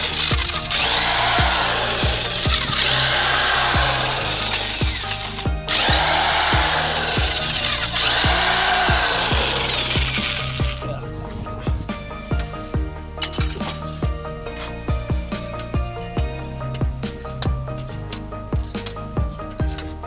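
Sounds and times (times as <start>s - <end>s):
power tool running: 0.0s - 10.8s
background music with steady beat: 0.0s - 20.0s.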